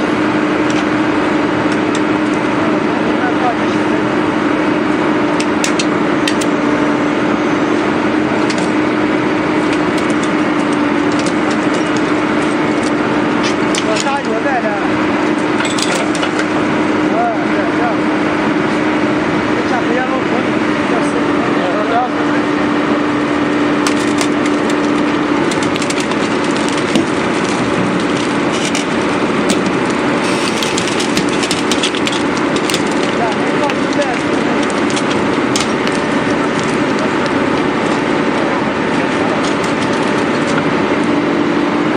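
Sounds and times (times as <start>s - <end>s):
excavator engine humming: 0.0s - 41.9s
concrete cracking and crunching: 23.8s - 38.3s.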